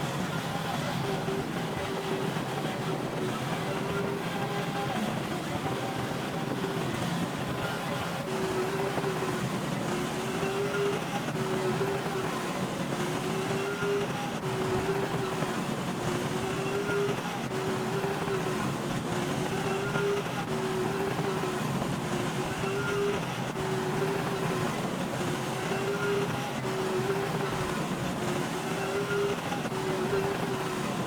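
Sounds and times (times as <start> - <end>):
bulldozer engine running: 0.0 - 31.0
bulldozer tracks squealing: 13.1 - 31.0.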